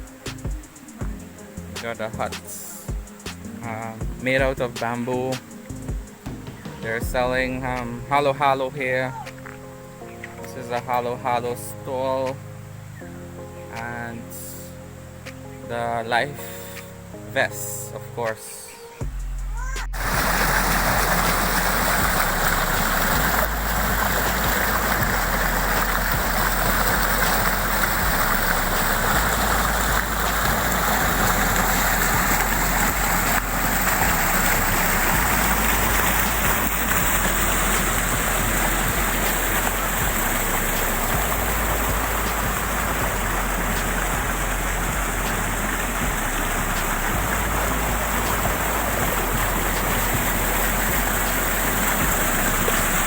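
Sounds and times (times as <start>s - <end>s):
waterfall rushing: 19.6s - 53.0s.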